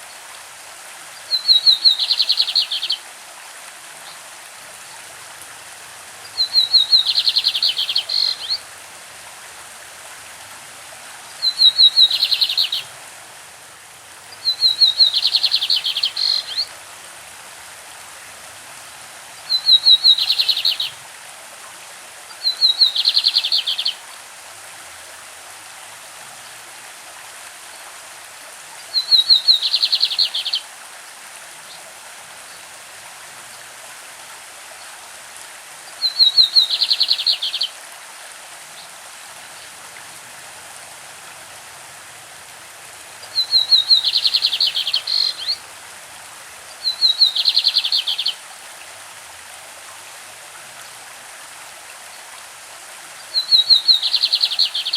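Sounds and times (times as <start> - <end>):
stream running: 0.0 - 54.9
bird singing trills: 1.3 - 3.0, 6.4 - 8.6, 11.4 - 12.9, 14.4 - 16.7, 19.5 - 21.0, 29.0 - 30.6, 43.3 - 45.6, 46.8 - 48.4, 53.4 - 54.9.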